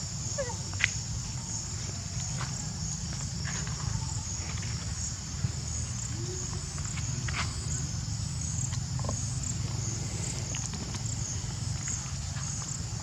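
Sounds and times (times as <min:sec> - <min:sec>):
pulsing insect drone: 0:00.0 - 0:13.0.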